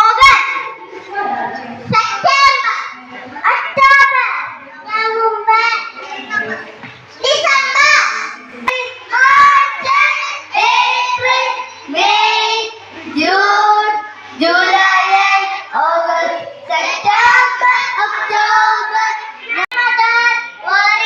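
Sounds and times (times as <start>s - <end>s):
young children singing: 0.0s - 21.0s.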